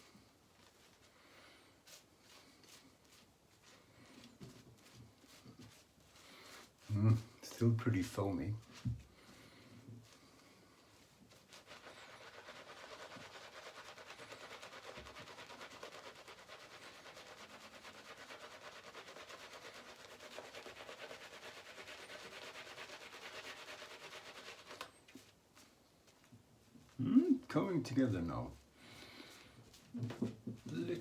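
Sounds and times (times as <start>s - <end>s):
shaving brush swishing lather: 1.8s - 9.1s, 10.0s - 26.2s.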